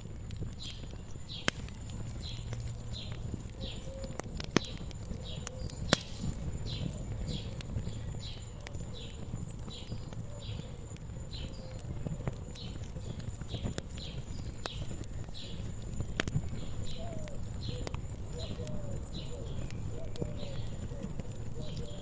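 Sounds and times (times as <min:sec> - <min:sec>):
wood fire crackling: 0:00.0 - 0:22.0
bird high calls: 0:16.8 - 0:22.0.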